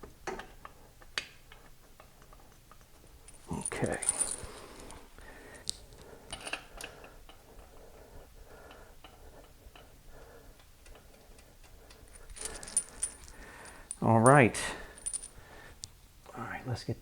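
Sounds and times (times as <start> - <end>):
metal bolts and washers clinking: 1.5 - 5.0, 12.1 - 15.4.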